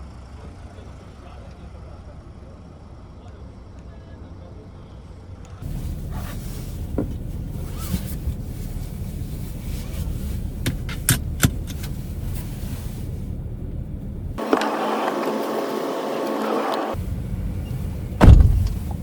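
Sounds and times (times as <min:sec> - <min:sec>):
low vehicle rumble: 0:05.0 - 0:19.0.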